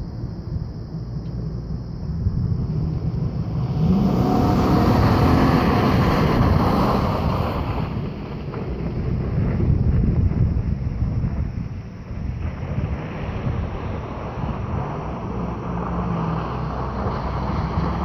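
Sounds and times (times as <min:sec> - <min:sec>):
wind rumbling on microphone: 0:00.0 - 0:18.0
vehicle passing by: 0:02.3 - 0:10.0, 0:12.4 - 0:18.0.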